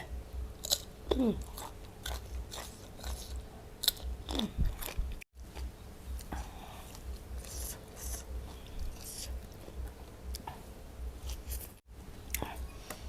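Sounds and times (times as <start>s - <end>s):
chewing: 0.6s - 10.6s.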